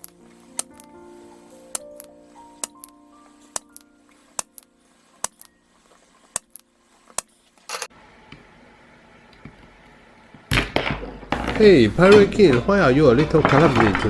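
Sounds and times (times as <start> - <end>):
hand tools tapping circuit board: 0.0 - 0.9, 1.7 - 2.9, 3.5 - 5.5, 6.3 - 7.9, 11.3 - 12.6.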